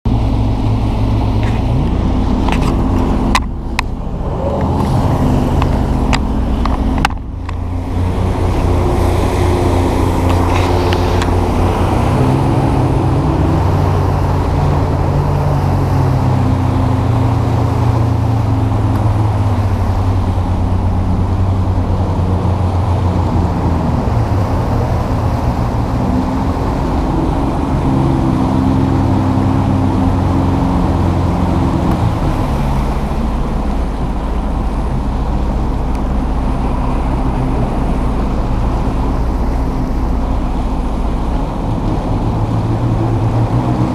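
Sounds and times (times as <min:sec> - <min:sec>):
vehicle engine revving: 0:00.1 - 0:43.9.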